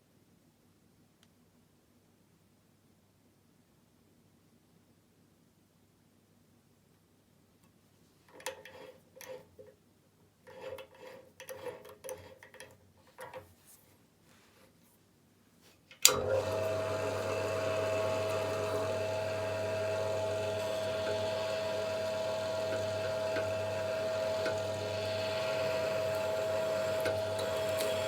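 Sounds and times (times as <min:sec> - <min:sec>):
tools rubbing and knocking: 0:10.5 - 0:13.8
electric drill motor whining: 0:16.1 - 0:28.0.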